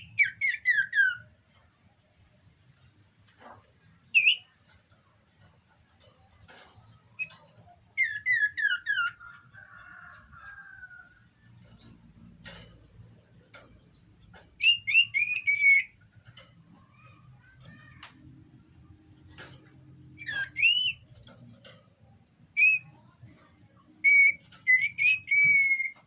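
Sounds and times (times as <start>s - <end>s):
bird singing whistled notes: 0.0s - 1.3s, 4.1s - 4.5s, 7.2s - 11.2s, 14.6s - 16.0s, 20.2s - 21.1s, 22.5s - 23.1s, 24.0s - 26.0s.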